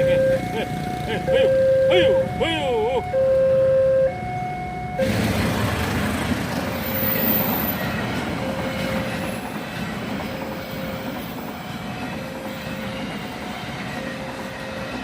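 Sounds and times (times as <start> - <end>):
train wheels clattering on rails: 5.0 - 15.0.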